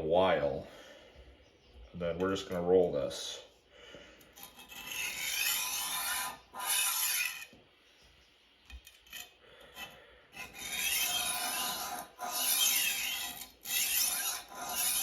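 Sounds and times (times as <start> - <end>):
knife sharpener grinding: 4.3 - 7.6, 8.8 - 15.0.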